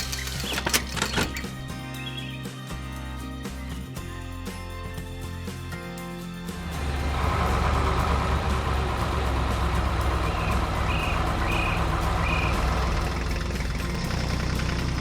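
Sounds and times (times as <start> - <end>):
diesel engine rumbling: 6.5 - 15.0.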